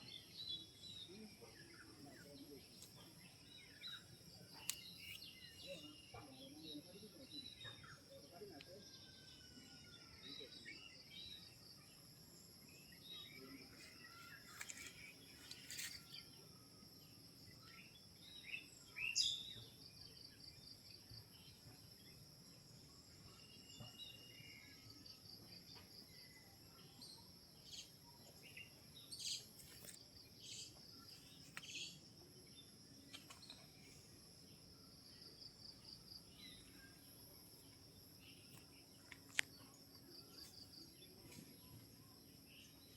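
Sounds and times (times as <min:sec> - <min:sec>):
bird chirps: 0:00.0 - 0:11.9.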